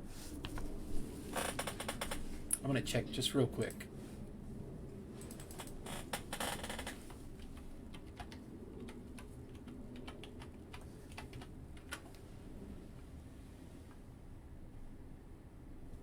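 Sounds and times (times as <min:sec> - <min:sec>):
typing on computer keyboard: 0:05.2 - 0:05.8, 0:06.8 - 0:12.2.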